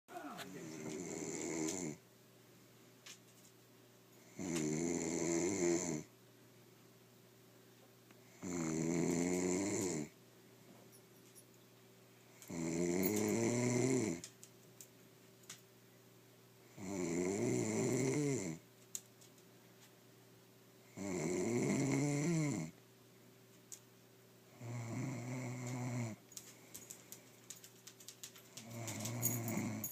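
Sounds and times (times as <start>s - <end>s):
loud buzzing snores: 0.5s - 2.0s, 4.2s - 6.1s, 8.3s - 10.1s, 12.5s - 14.2s, 16.7s - 18.6s, 20.9s - 22.8s, 24.5s - 26.2s, 28.7s - 29.9s.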